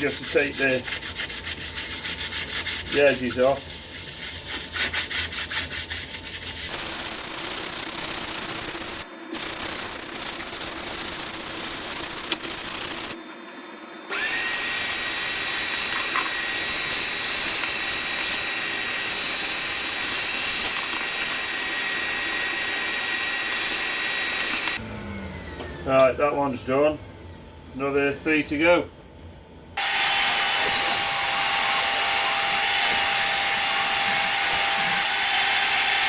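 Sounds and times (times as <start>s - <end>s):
sandpaper rubbing wood: 0.0s - 6.8s
power tool whining: 14.1s - 25.9s, 29.8s - 36.0s.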